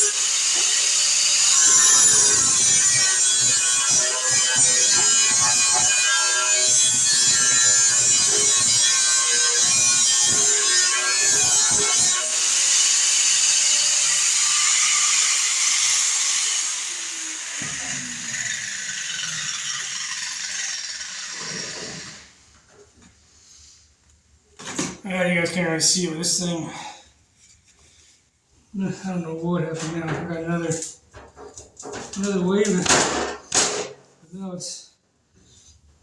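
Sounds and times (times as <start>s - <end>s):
small power tool hissing: 0.0s - 22.4s.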